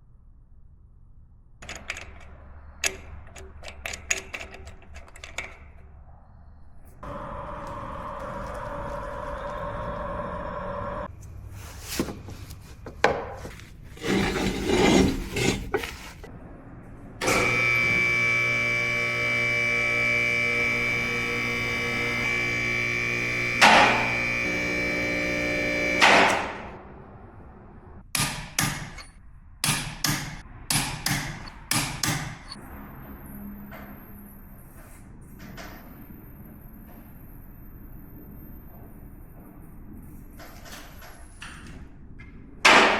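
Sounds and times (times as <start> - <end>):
hydraulic power unit whining: 7.0 - 11.1, 17.2 - 26.6.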